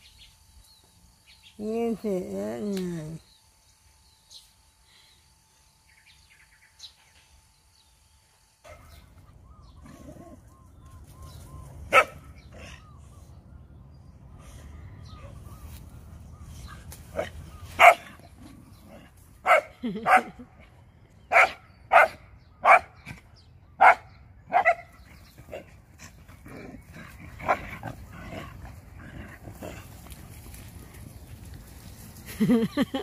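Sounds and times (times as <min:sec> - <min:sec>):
dog barking: 0:11.9 - 0:12.2, 0:17.2 - 0:18.1, 0:19.4 - 0:20.3, 0:21.3 - 0:22.9, 0:23.8 - 0:24.9.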